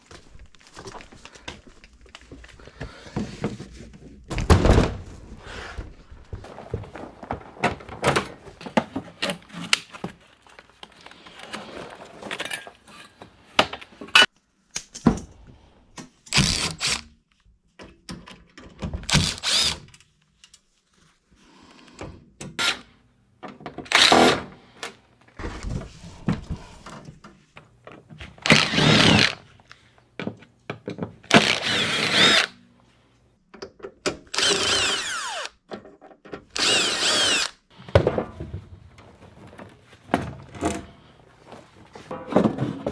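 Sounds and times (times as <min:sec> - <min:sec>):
impact driver whining: 0:28.5 - 0:29.4, 0:31.3 - 0:32.6, 0:34.3 - 0:35.5, 0:36.6 - 0:37.6
metal and plastic parts clunking: 0:35.6 - 0:36.6, 0:41.9 - 0:42.9.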